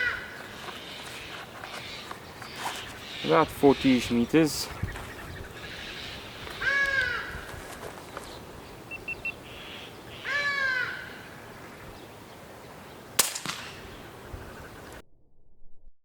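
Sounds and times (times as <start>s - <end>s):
drawn-out falling animal call: 0.0s - 4.2s, 5.5s - 8.0s, 8.9s - 11.4s
suppressed air rifle shot: 13.2s - 14.0s.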